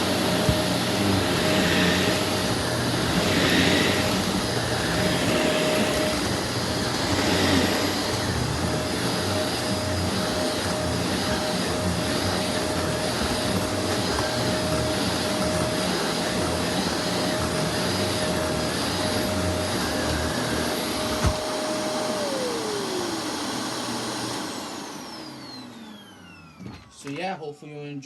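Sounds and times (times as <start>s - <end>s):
vacuum cleaners whirring: 0.0s - 27.9s.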